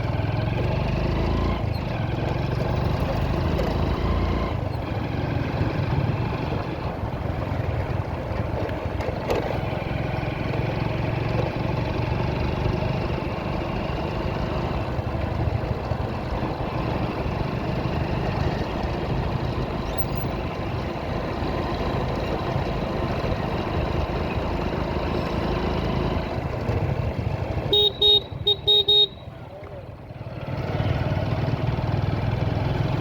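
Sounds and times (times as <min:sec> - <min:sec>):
vehicle engine and road noise: 0:00.0 - 0:33.0
horn tooting: 0:27.6 - 0:29.5.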